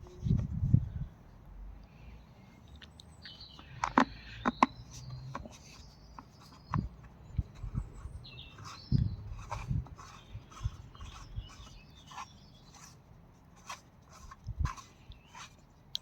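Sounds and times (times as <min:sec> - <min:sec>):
birds chirping faintly: 0:00.0 - 0:16.0.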